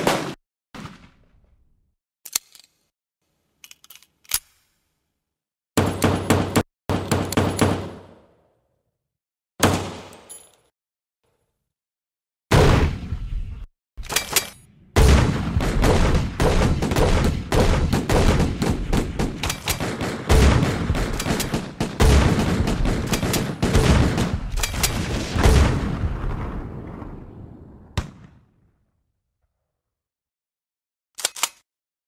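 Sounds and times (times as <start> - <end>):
gunshot: 0.0 - 1.4, 9.6 - 10.3, 12.5 - 13.7, 14.9 - 28.6
heavy booms: 12.5 - 13.7, 15.0 - 19.4, 21.8 - 28.5
rapid automatic gunfire: 15.0 - 25.8.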